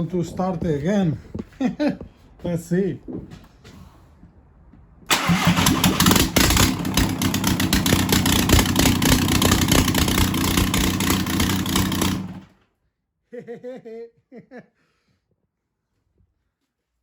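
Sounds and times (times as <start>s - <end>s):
diesel engine running: 5.1s - 12.5s.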